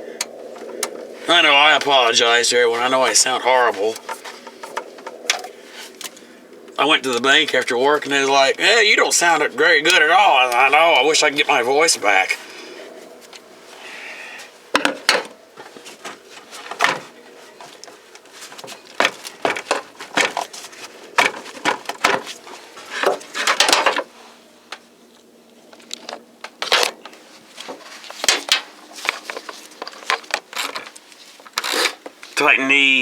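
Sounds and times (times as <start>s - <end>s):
hand tools clicking and clattering: 3.3s - 6.2s, 14.8s - 24.1s.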